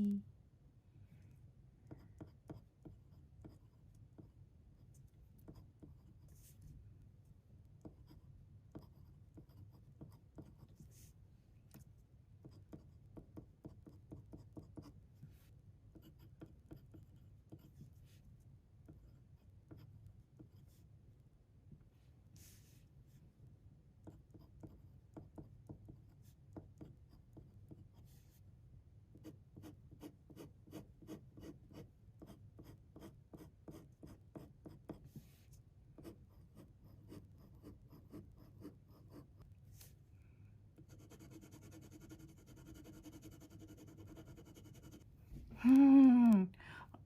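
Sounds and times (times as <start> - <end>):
pen writing on paper: 1.8 - 4.4, 5.4 - 6.6, 7.8 - 10.8, 12.4 - 15.0, 15.9 - 17.8, 24.0 - 28.1, 29.2 - 35.1, 36.0 - 39.4, 40.8 - 45.0.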